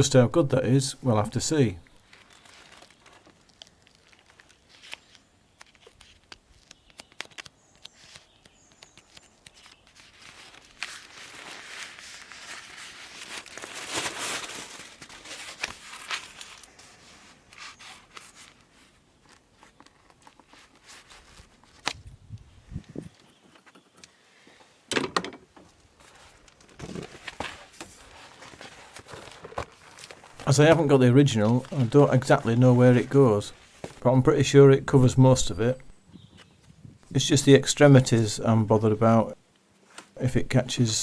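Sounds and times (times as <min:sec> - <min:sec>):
foam insulation sheet crinkling: 0:02.0 - 0:22.2, 0:25.7 - 0:34.1.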